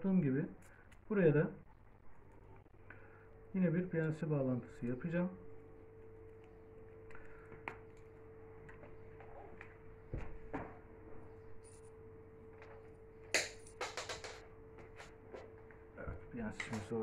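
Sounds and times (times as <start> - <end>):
faint steady hum: 0.0 - 17.0
knocks and clicks of tools: 13.3 - 14.5.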